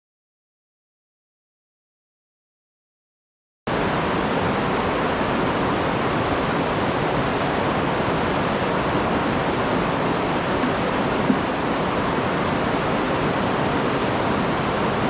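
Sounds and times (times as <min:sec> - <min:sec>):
waterfall rushing: 0:03.7 - 0:15.0.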